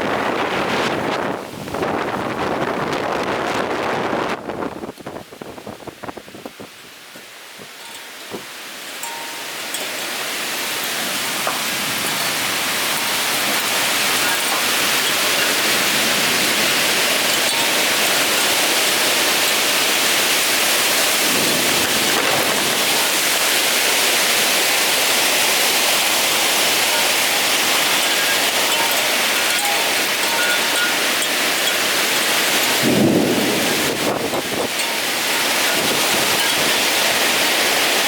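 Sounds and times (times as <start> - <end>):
heavy rain pouring: 0.0 - 38.0.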